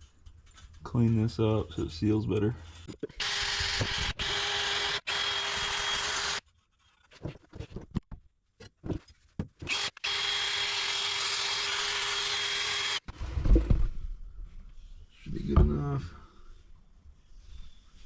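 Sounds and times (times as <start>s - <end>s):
scraping and handling noises: 0.0s - 3.2s, 6.4s - 9.7s
handheld power tool whining: 3.1s - 6.4s, 9.6s - 13.1s.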